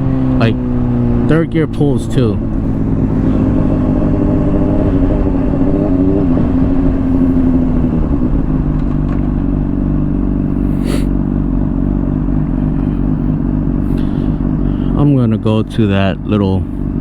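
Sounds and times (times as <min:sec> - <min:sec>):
motorcycle engine accelerating: 0:00.0 - 0:17.0
wind and road rumble: 0:00.0 - 0:17.0.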